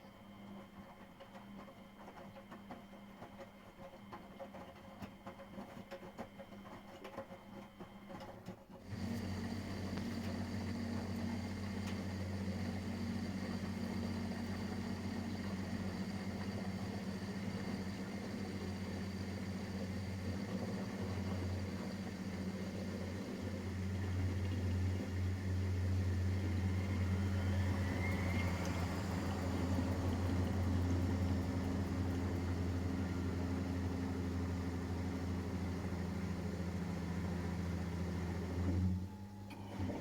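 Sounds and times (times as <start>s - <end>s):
washing machine motor hum: 8.8s - 40.0s
motor whine rising in pitch: 9.0s - 39.1s.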